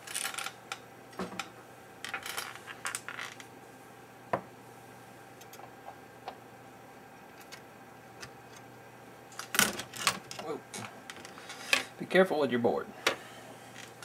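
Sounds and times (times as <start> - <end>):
small objects clicking and clinking: 0.0 - 0.6.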